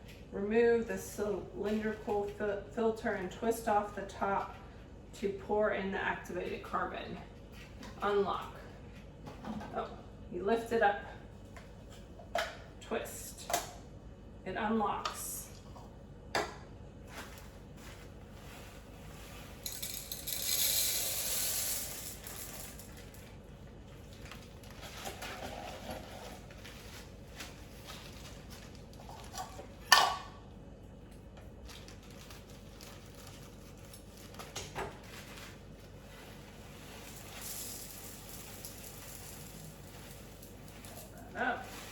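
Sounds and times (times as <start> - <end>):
pellets pouring into plastic canister: 19.2 - 23.3, 35.1 - 41.9.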